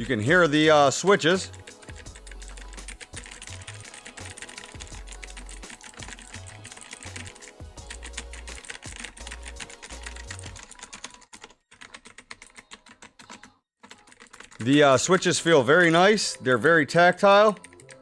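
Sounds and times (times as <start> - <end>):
background music with deep bass: 0.0 - 10.6.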